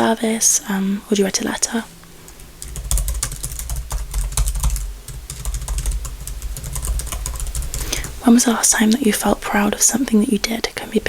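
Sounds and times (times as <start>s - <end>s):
fast typing on keyboard: 2.3s - 8.2s.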